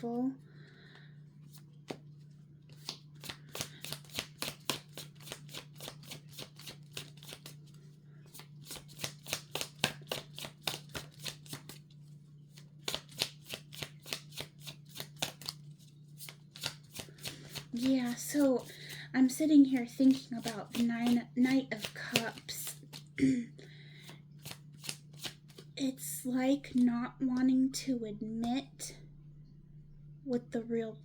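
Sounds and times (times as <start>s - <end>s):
cards being shuffled: 1.4s - 23.2s, 24.0s - 25.7s
steady low hum: 7.0s - 31.0s.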